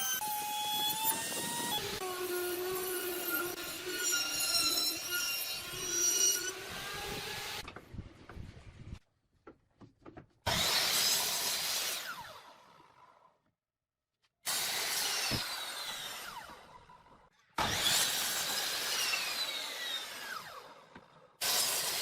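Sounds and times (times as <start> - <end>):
power tool cutting wood: 0.0 - 7.6, 10.5 - 13.2, 14.5 - 17.0, 17.6 - 22.0.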